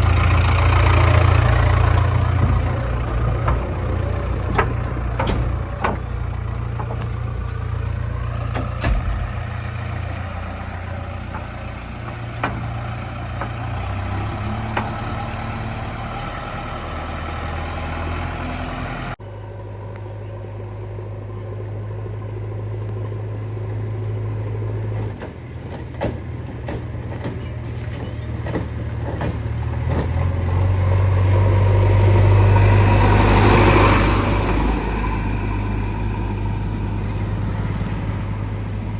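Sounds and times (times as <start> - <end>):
diesel engine running: 0.0 - 38.9
sharp knocks: 0.1 - 16.1.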